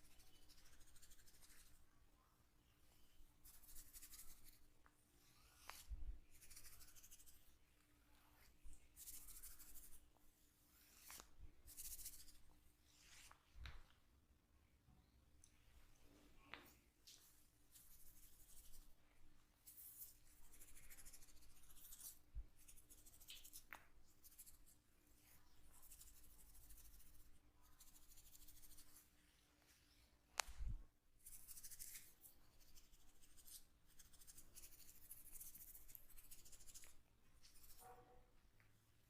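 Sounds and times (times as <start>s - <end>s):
hands rubbing hair and scalp: 10.8s - 13.9s, 19.6s - 29.0s.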